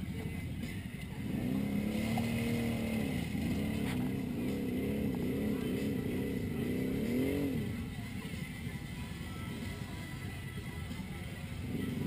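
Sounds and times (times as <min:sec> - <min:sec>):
vehicle engine revving: 0:01.0 - 0:08.4, 0:11.5 - 0:12.0.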